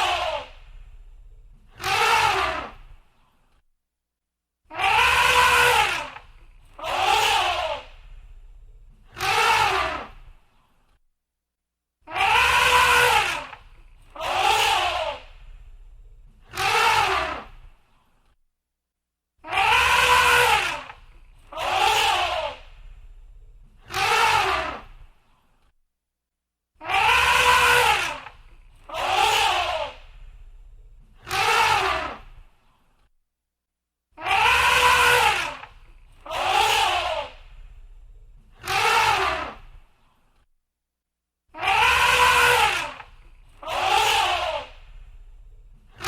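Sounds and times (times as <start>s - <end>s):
low rumble: 0.6s - 1.7s, 15.3s - 16.4s
elephant calls: 12.1s - 17.6s, 19.5s - 24.9s, 26.9s - 32.3s, 34.3s - 39.6s, 41.6s - 46.0s.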